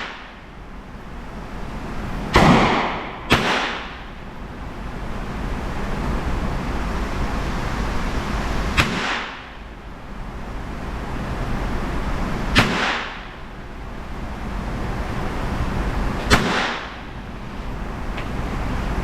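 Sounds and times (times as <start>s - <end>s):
steady background hiss: 0.0s - 19.0s
revolver shots: 2.3s - 4.1s, 8.8s - 9.5s, 12.5s - 13.3s, 16.2s - 17.0s.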